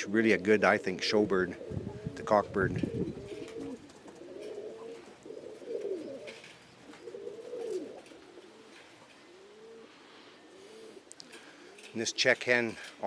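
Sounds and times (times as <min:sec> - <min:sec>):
pigeons cooing: 0:00.0 - 0:12.0.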